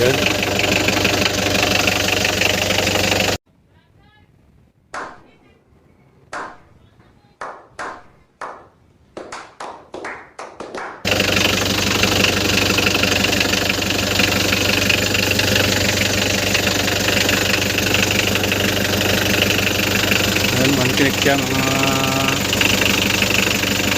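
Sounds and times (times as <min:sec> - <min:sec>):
van engine idling: 0:00.0 - 0:03.4, 0:11.0 - 0:23.9.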